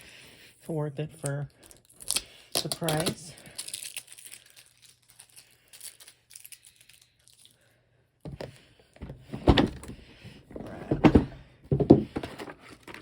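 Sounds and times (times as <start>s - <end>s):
packaging crinkling and rustling: 1.5s - 7.6s, 12.1s - 13.0s.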